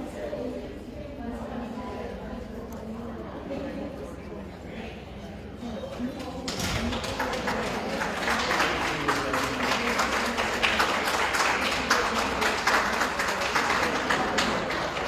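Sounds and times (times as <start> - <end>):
audience applauding: 6.2 - 15.0.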